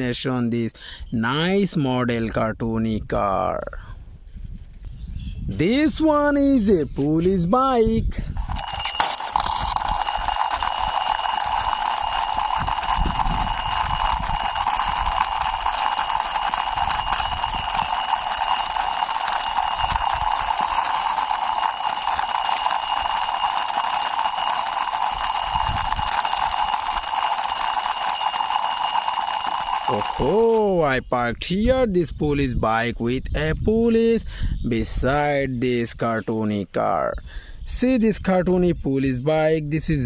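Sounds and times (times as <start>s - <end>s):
constant high whine: 7.6s - 31.1s
electronic ringing buzz: 8.4s - 30.8s.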